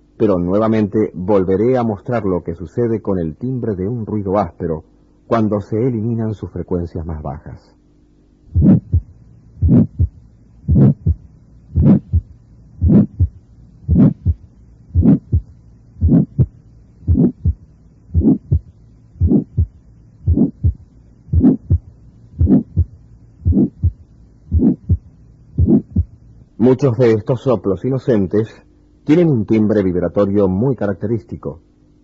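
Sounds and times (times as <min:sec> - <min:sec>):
harsh heart murmur: 0:08.5 - 0:26.2
heartbeat through stethoscope: 0:08.5 - 0:26.2.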